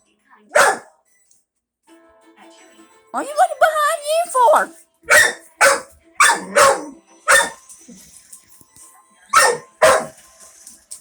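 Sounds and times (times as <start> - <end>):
dog barking: 0.5 - 1.0, 5.1 - 7.6, 9.3 - 10.2.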